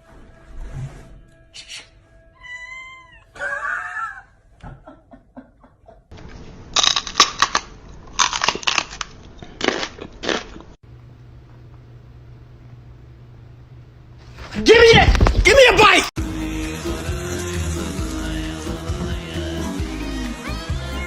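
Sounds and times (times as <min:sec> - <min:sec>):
cat meowing: 0:02.4 - 0:03.4
low steady hum: 0:10.9 - 0:14.4.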